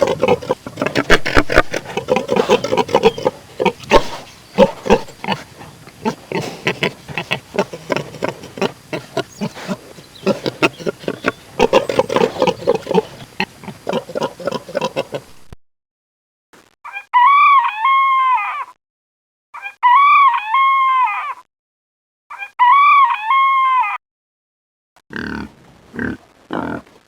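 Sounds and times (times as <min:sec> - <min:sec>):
rough pulsing animal call: 0:00.0 - 0:15.3.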